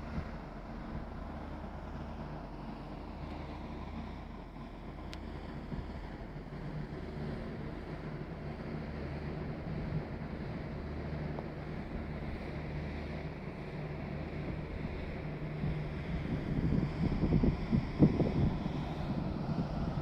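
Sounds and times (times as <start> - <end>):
low mechanical hum: 0.0 - 20.0
wind buffeting microphone: 14.3 - 20.0.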